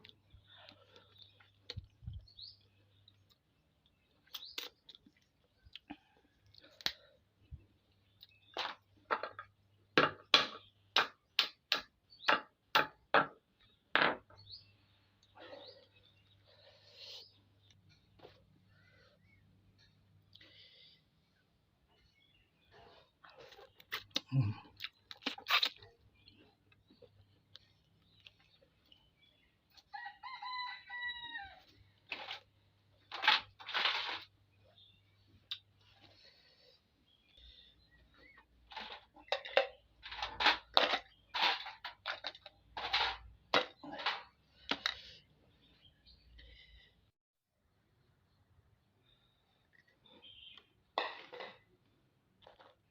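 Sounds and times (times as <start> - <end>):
rooster crowing: 29.9 - 31.7.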